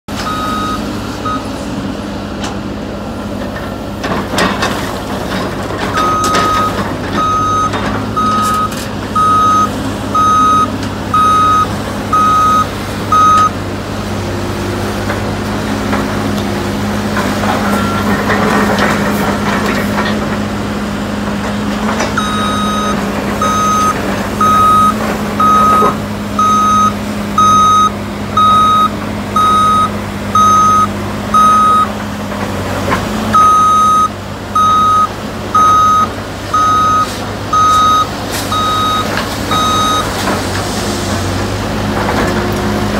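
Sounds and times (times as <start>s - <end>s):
truck backup alarm beeping: 0.1s - 1.5s, 5.9s - 13.6s, 17.6s - 18.4s, 22.1s - 32.0s, 33.3s - 40.2s
diesel engine running: 0.1s - 42.9s.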